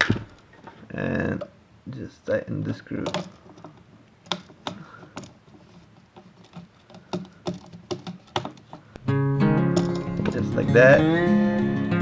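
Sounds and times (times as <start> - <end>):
screwdriver clicks and taps: 3.0 - 9.0, 9.8 - 11.0.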